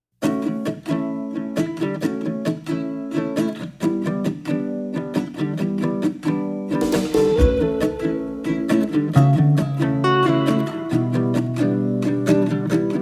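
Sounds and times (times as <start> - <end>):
acoustic guitar strumming chords: 6.8 - 11.3.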